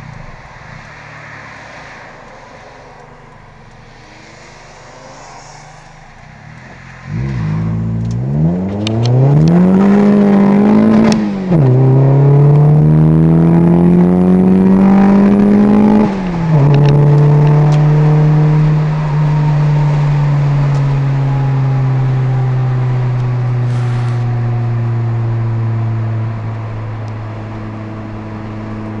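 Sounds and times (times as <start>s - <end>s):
car engine revving: 0.0s - 29.0s.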